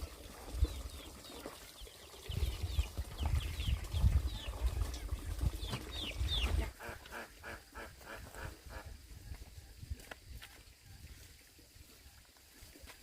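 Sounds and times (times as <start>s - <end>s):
small birds chirping: 0.5s - 6.8s
low rumbling on microphone: 2.2s - 6.7s.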